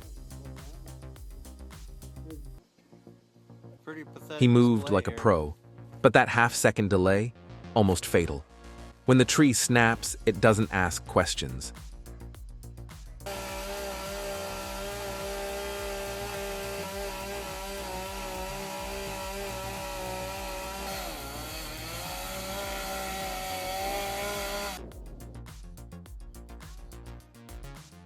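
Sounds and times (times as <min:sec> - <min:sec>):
chainsaw cutting wood: 0:13.2 - 0:24.8.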